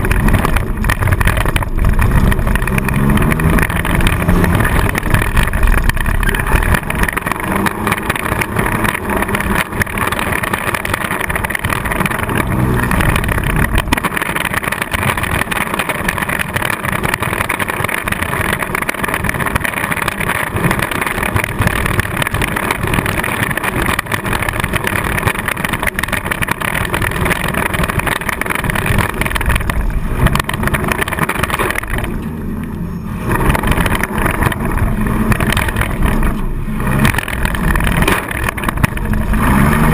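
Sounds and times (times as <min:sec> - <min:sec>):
car engine running hard: 0:00.0 - 0:39.9.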